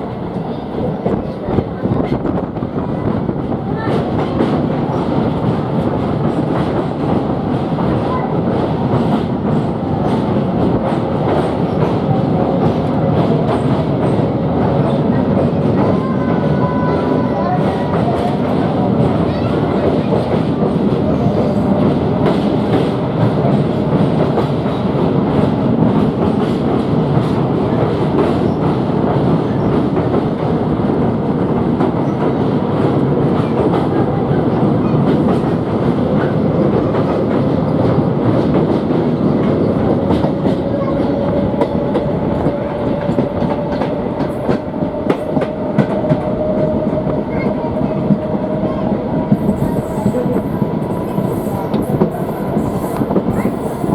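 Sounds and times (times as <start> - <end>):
passenger train running on track: 0.0 - 53.9.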